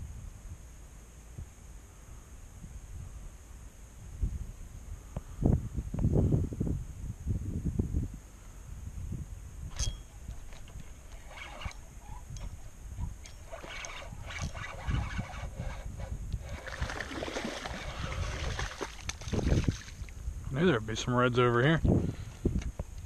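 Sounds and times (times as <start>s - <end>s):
wind rumble on microphone: 0.0s - 23.0s
water splashing around kayak: 10.4s - 20.2s.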